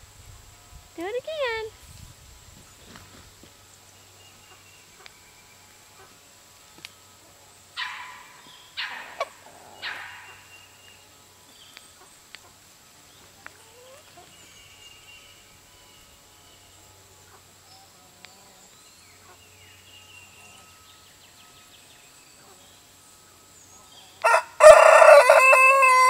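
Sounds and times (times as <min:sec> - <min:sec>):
turkey gobbling: 0:07.8 - 0:10.5.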